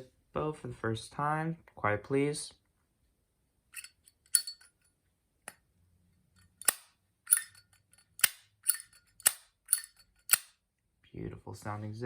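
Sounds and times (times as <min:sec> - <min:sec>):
lighter lid clicking open and shut: 0:08.2 - 0:10.5.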